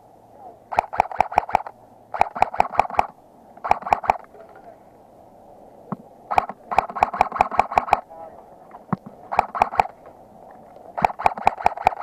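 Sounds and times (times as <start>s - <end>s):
airsoft gun firing bursts: 0.7s - 4.2s, 6.3s - 8.0s, 9.3s - 10.0s, 11.0s - 12.0s.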